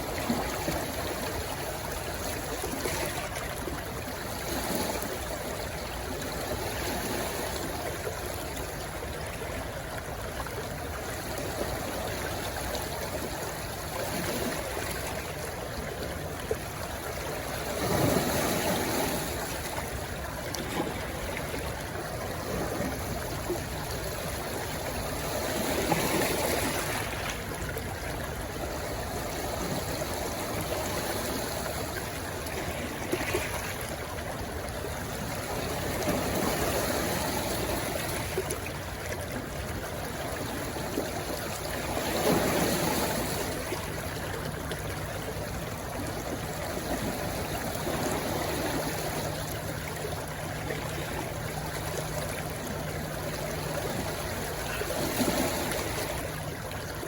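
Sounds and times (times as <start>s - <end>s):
stream rushing and gurgling: 0.0s - 57.0s.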